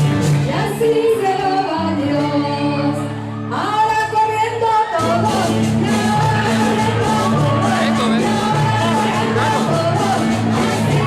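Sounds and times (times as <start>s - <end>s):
voices singing: 4.9s - 11.0s
instrumental accompaniment: 5.0s - 11.0s.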